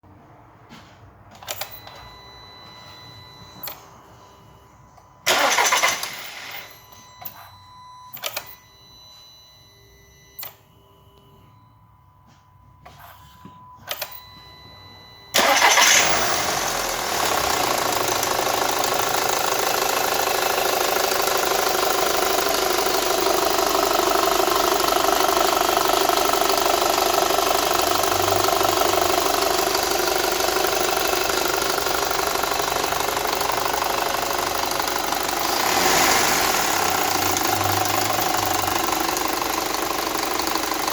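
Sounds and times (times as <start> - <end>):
car engine starting and idling: 0.0 - 7.6, 14.0 - 40.9.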